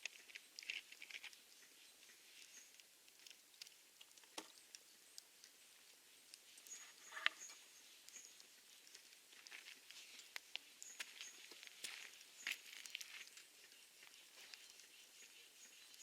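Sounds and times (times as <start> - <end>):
campfire crackling: 0.0 - 16.0.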